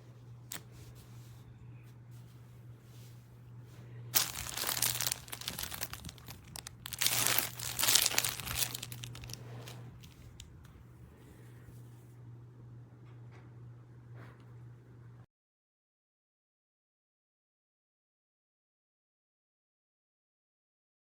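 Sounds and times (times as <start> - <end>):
plastic packaging crinkling: 4.2 - 10.4.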